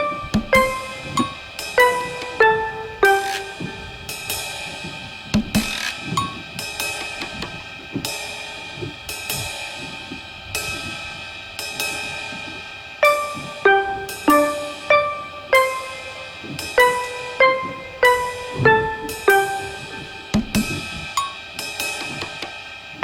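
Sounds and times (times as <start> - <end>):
keyboard notes: 0.0 - 4.6, 13.0 - 21.0.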